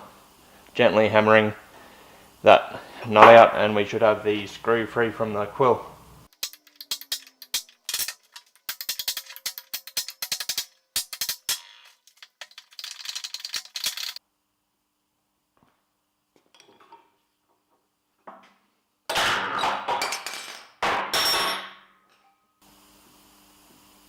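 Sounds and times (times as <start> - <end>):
metal parts clinking and clanging: 6.3 - 14.2.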